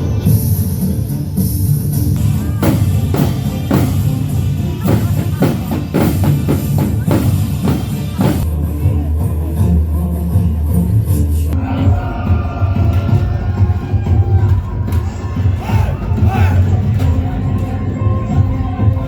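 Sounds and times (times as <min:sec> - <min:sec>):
bass line: 0:00.0 - 0:19.0
drum hits: 0:02.2 - 0:08.5.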